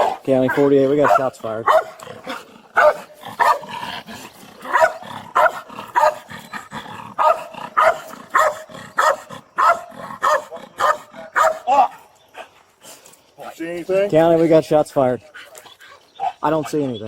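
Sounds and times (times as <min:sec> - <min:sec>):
dog barking excitedly: 0:00.0 - 0:03.9, 0:04.6 - 0:11.7.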